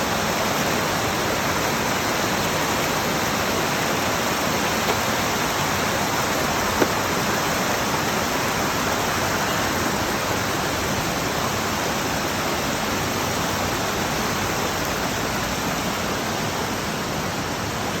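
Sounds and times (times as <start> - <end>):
waterfall rushing: 13.4 - 18.0.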